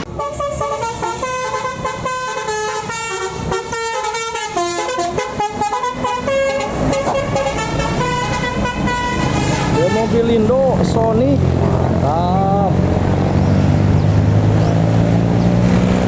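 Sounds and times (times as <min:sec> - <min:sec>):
multi-tone bus horn melody: 0:00.0 - 0:10.8
bus engine running: 0:00.0 - 0:16.0.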